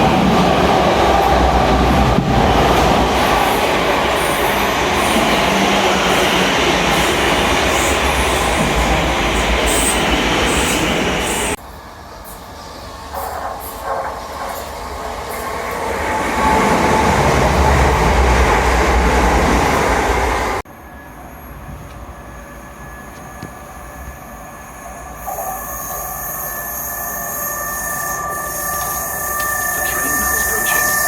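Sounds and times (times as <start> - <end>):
high-pitched train squeal: 20.7 - 31.0
train wheels rumbling: 25.9 - 31.0.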